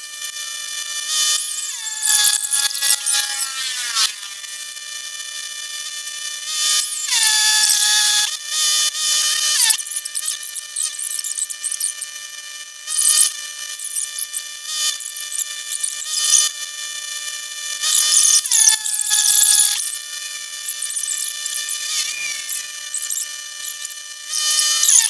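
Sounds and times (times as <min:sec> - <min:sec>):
power tool whining: 0:06.5 - 0:12.1, 0:12.9 - 0:16.6, 0:17.8 - 0:25.0
tool cutting metal hissing: 0:06.6 - 0:08.3, 0:09.1 - 0:12.0, 0:12.9 - 0:16.5, 0:17.8 - 0:25.0.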